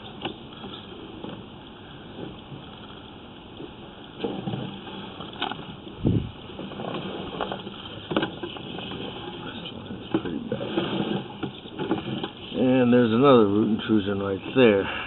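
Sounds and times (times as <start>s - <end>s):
knocks and scrapes in pipe: 10.0s - 12.6s.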